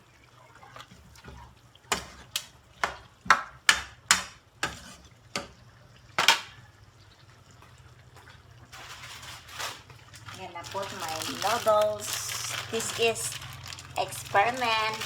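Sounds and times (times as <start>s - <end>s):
utensil scraping and knocking pan: 4.2s - 5.5s.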